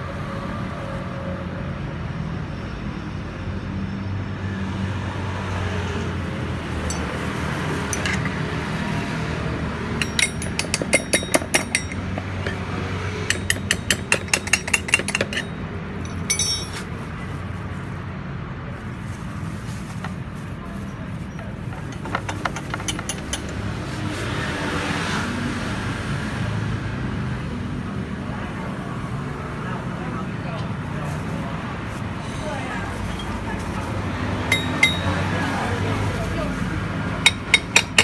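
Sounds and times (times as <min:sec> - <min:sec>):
rapid metallic clicking: 0:06.8 - 0:08.6, 0:10.0 - 0:16.8, 0:37.2 - 0:38.0
short rattle: 0:06.8 - 0:09.3, 0:09.9 - 0:17.3, 0:21.2 - 0:23.9, 0:32.9 - 0:35.4, 0:37.2 - 0:38.0.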